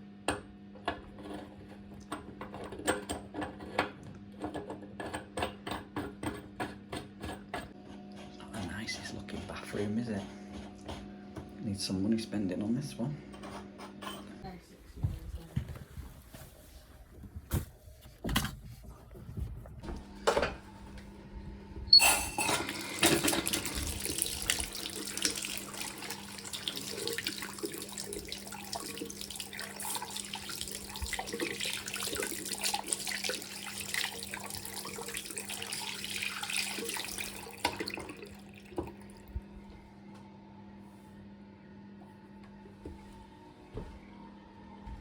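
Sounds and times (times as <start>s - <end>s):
tap water running into basin: 22.0s - 39.4s.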